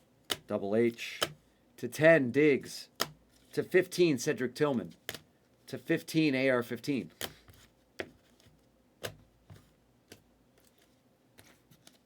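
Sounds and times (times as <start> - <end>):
cards clicking and tapping: 0.2 - 1.4, 2.9 - 3.5, 7.1 - 12.0.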